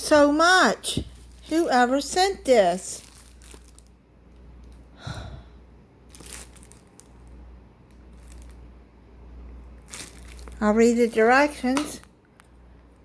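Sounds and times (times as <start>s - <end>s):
steady low hum: 0.0s - 13.0s
packaging rustling: 0.8s - 4.0s, 6.1s - 8.7s, 9.8s - 11.2s.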